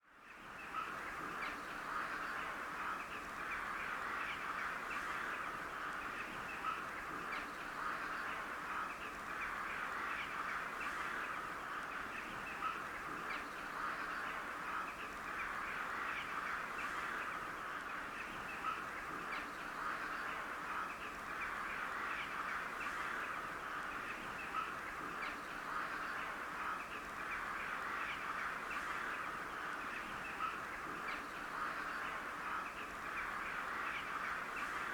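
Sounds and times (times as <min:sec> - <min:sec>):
flock of crows calling: 0:25.6 - 0:34.9.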